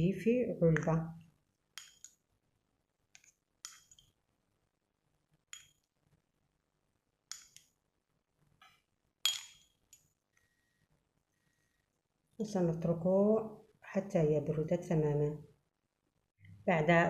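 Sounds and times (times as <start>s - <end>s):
spoon clinking against container: 9.3s - 9.7s.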